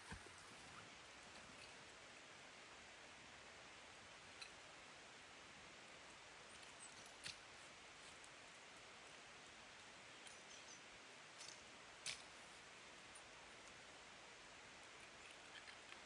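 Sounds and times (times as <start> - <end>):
faint steady hiss: 0.0 - 16.0.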